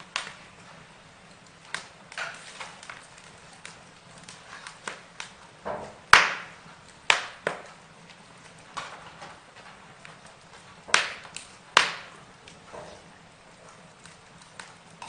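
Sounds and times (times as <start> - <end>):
burning wood crackling: 0.0 - 15.0
sharp pops of fire: 0.0 - 15.0.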